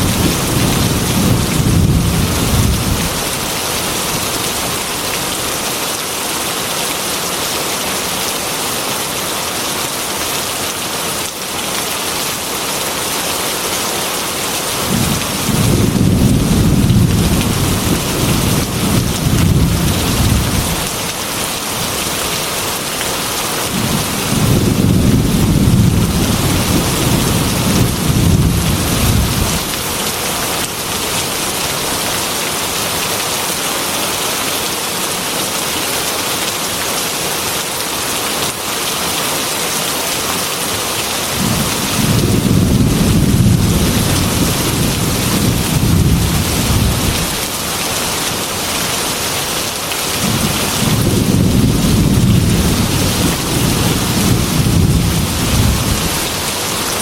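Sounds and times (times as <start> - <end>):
low thunder rolling: 0.0 - 3.2, 14.9 - 20.8, 23.8 - 29.7, 41.4 - 47.3, 50.2 - 56.1
heavy rain falling: 0.0 - 57.0.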